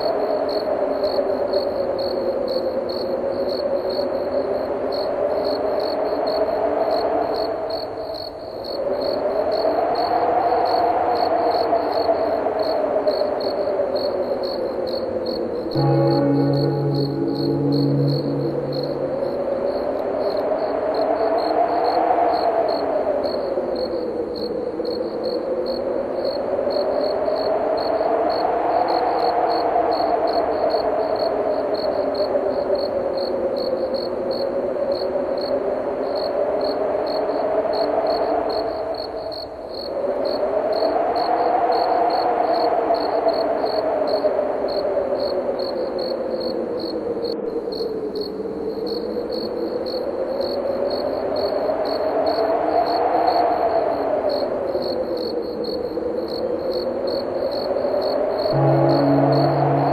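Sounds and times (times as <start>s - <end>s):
crickets chirping: 0.0s - 59.9s
wind moaning: 8.8s - 24.8s, 57.7s - 59.9s.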